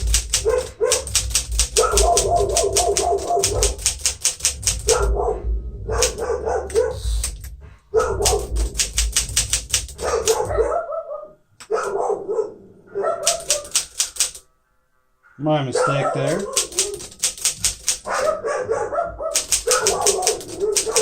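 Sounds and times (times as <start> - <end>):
typewriter keystrokes: 0.0 - 5.1, 6.0 - 10.6, 13.2 - 14.4, 16.3 - 18.4, 19.3 - 21.0
dog barking: 0.3 - 1.2, 1.8 - 3.9, 4.8 - 7.2, 7.9 - 8.6, 10.0 - 13.8, 15.7 - 17.2, 18.0 - 21.0.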